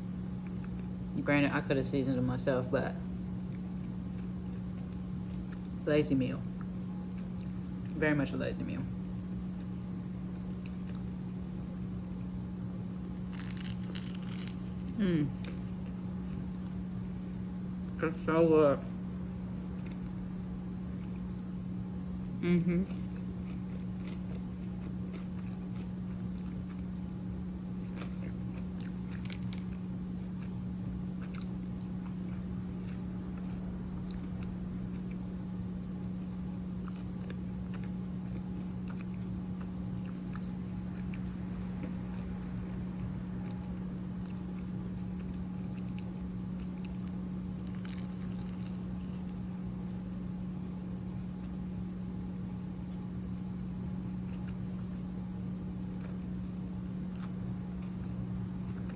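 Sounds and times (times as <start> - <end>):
steady low hum: 0.0 - 58.9
biting and chewing: 9.0 - 17.4, 22.8 - 49.8, 55.8 - 58.9
crisp crunches: 12.2 - 16.8, 44.1 - 49.5.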